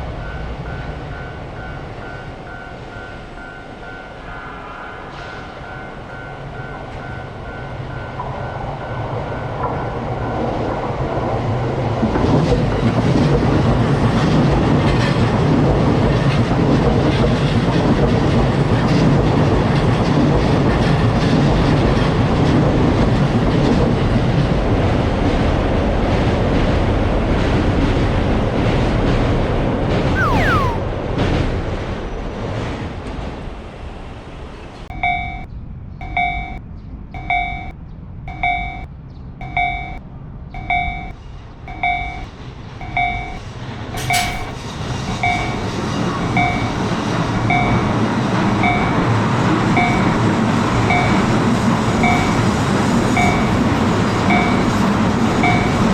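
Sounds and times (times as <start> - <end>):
level crossing alarm ringing: 38.3 - 40.0, 40.6 - 43.4, 46.3 - 48.0.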